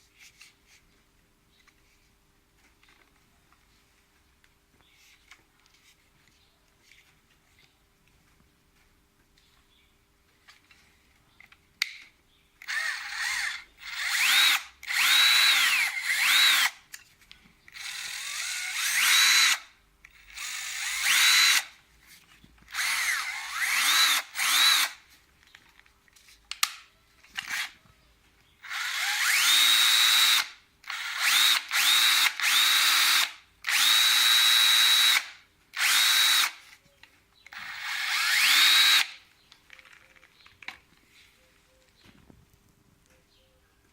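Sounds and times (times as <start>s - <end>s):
cordless drill motor whine: 12.6s - 16.8s, 17.7s - 21.7s, 22.7s - 25.0s, 28.6s - 36.6s, 37.5s - 39.2s.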